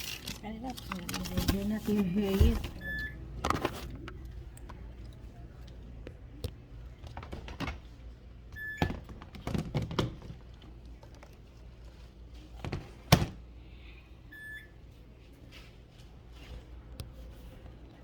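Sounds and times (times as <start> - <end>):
objects knocking and thudding: 8.8 - 10.6.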